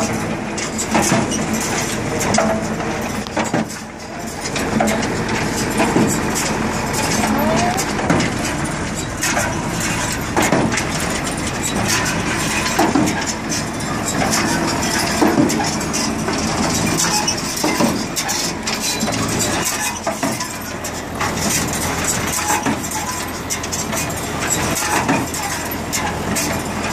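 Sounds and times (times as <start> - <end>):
sharp baler knocks: 0.0 - 13.4.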